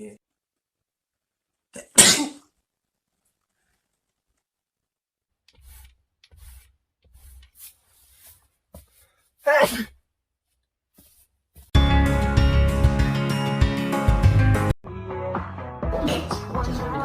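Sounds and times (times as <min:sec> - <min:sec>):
person sneezing loudly: 0:01.8 - 0:02.5, 0:09.4 - 0:10.0.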